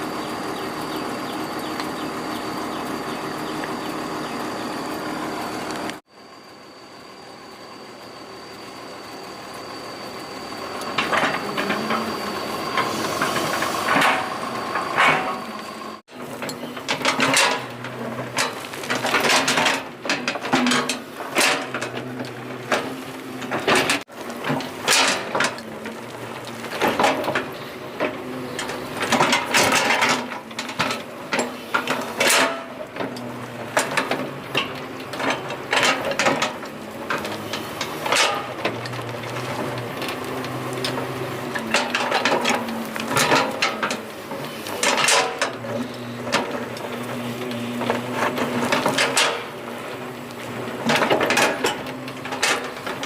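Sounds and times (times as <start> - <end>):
excavator motor hum: 0.0 - 53.0
clanks knocks and scrapes: 10.9 - 15.5, 16.2 - 53.0.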